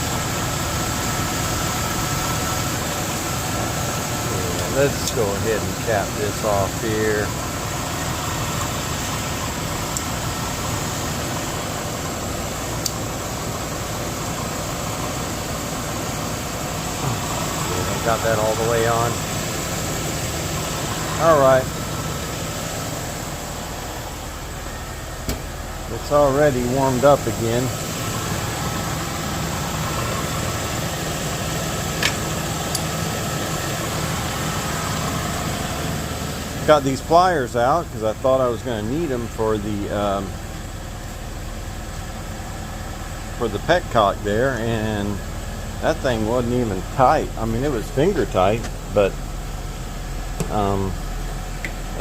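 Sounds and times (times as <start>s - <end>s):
car engine idling: 0.0s - 52.0s.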